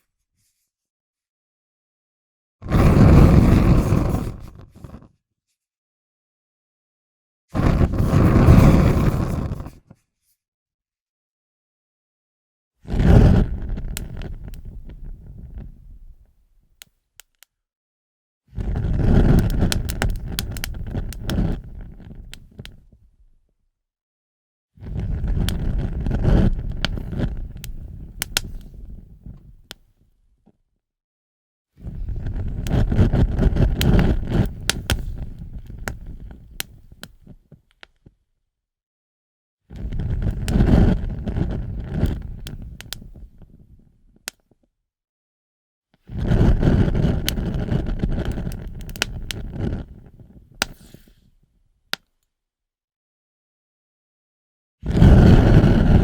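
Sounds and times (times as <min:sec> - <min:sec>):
fire burning and crackling: 0:02.7 - 0:04.6, 0:07.7 - 0:09.7, 0:19.2 - 0:22.5, 0:25.2 - 0:29.0, 0:32.0 - 0:37.3, 0:46.4 - 0:50.8.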